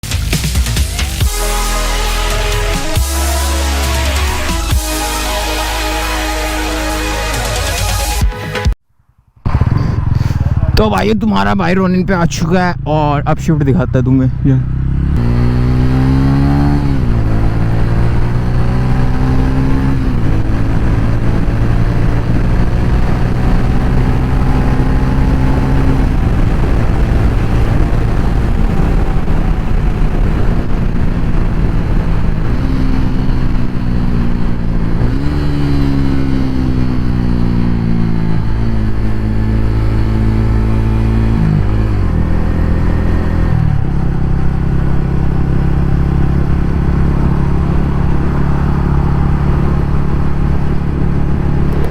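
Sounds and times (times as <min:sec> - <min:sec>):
motorcycle engine shifting gears: 0:09.4 - 0:10.9, 0:14.4 - 0:51.9.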